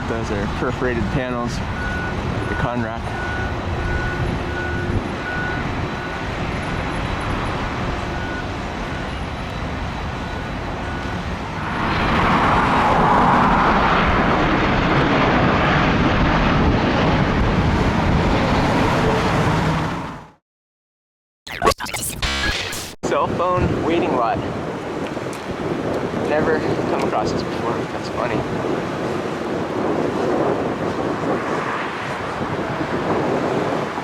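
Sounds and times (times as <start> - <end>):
jet airliner passing overhead: 0.0 - 20.4, 25.7 - 34.0
traffic noise: 0.0 - 20.4, 23.3 - 34.0.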